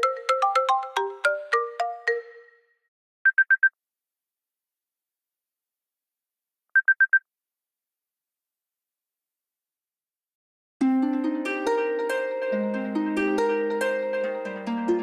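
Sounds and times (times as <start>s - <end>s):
phone ringtone beeps: 3.3s - 3.7s, 6.8s - 7.2s.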